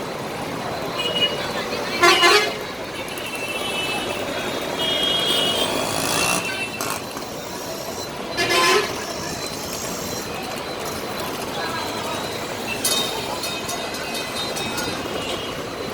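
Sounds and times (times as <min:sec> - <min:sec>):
road traffic noise: 0:00.0 - 0:15.9
bus horn honk: 0:02.0 - 0:02.6, 0:03.2 - 0:07.0, 0:08.3 - 0:09.2
high thin horn tone: 0:08.3 - 0:09.3.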